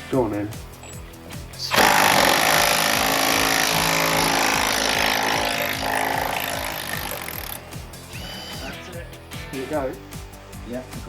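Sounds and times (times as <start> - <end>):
impact wrench hammering: 1.7 - 7.6.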